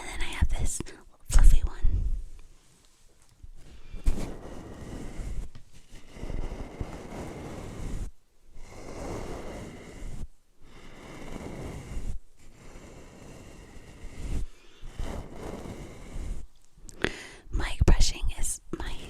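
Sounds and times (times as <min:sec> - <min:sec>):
brush rustling on microphone: 0:02.6 - 0:16.7.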